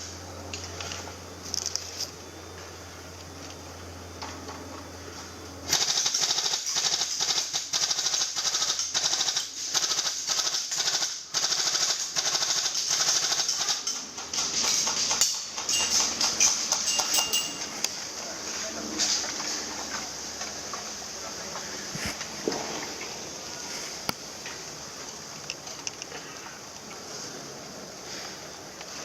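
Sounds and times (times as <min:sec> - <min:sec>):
airsoft gun firing full auto: 0:05.7 - 0:15.8.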